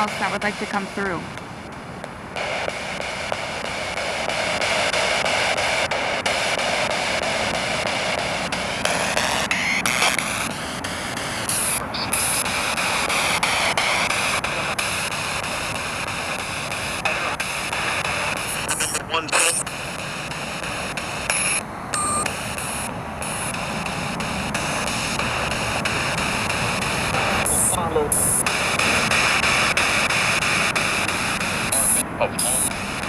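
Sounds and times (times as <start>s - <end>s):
radio static: 0.0s - 33.0s
wavering tones: 8.3s - 33.0s.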